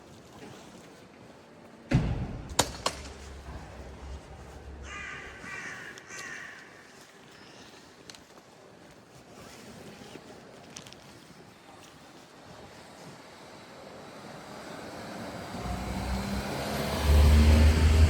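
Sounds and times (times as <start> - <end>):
loud thump with rumble: 1.9 - 4.9
bird calling: 4.8 - 7.6.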